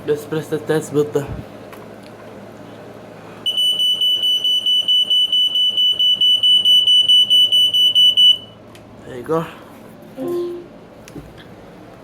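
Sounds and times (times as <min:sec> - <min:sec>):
smoke detector alarm beeping: 0:03.5 - 0:08.6.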